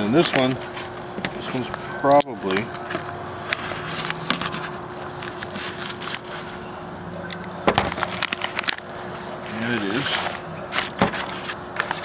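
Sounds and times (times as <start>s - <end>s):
faint hum: 0.0s - 12.0s
package crinkling and clicks: 7.3s - 8.9s.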